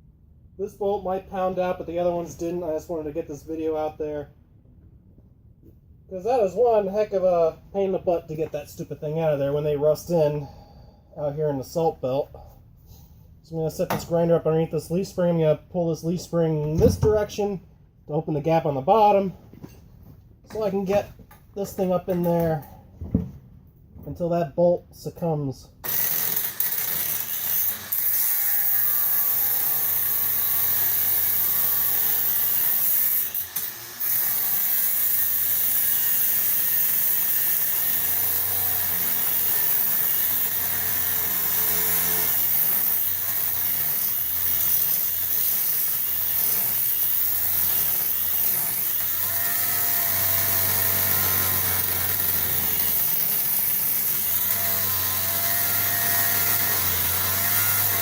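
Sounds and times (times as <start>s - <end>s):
grinder cutting steel: 25.8s - 58.0s.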